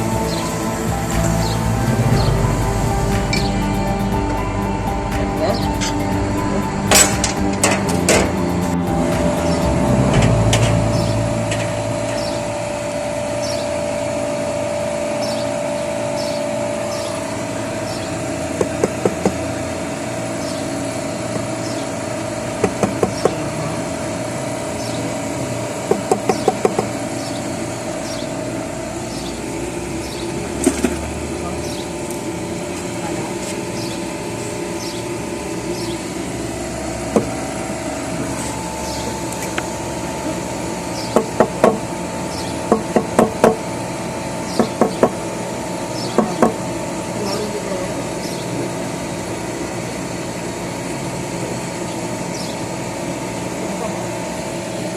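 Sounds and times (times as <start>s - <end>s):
steady machine hum: 0.0s - 54.9s
sharp knocks: 22.6s - 23.4s, 25.9s - 26.9s.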